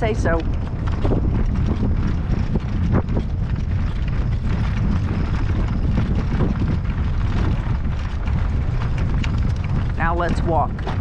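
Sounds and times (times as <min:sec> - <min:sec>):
horse hoofbeats on ground: 0:00.0 - 0:11.0
wind buffeting microphone: 0:00.0 - 0:11.0.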